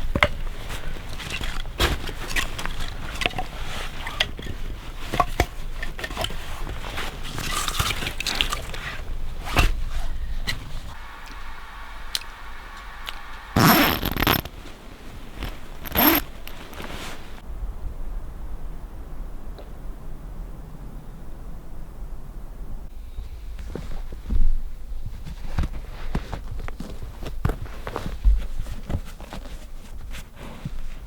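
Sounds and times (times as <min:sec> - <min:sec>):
zipper pulled: 0:13.6 - 0:14.6, 0:15.4 - 0:17.4
small clicks and knocks: 0:15.4 - 0:16.9.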